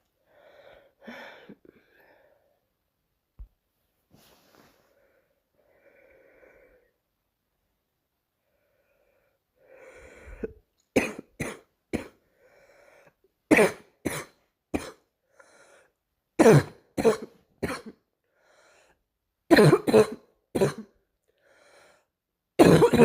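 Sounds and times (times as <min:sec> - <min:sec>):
girl coughing: 0:11.0 - 0:12.2, 0:13.5 - 0:15.0, 0:16.4 - 0:18.0, 0:19.5 - 0:21.0, 0:22.6 - 0:23.0
girl inhaling: 0:21.4 - 0:22.1.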